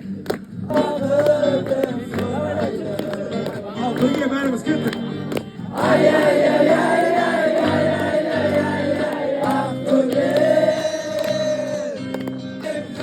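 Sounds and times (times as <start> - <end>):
voices singing together: 0.6 - 3.7, 5.6 - 13.0
backing music: 0.6 - 13.0.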